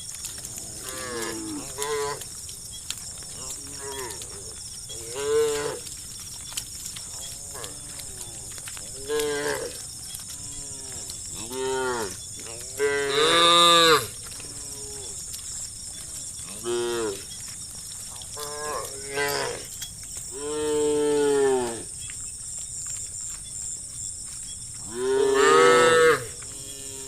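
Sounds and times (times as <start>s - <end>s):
cattle mooing: 24.8s - 27.0s.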